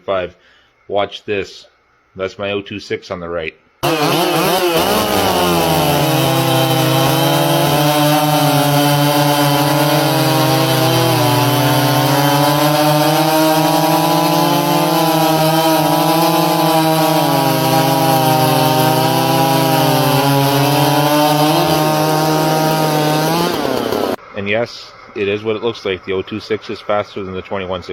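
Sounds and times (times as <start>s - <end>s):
chainsaws cutting wood: 3.8s - 24.2s.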